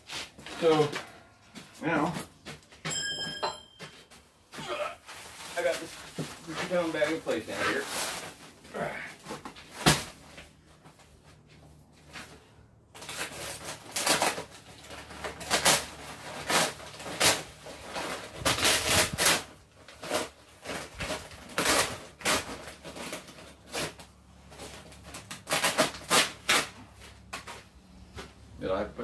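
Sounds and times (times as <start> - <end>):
sand bag rustling and scraping: 5.1 - 8.6.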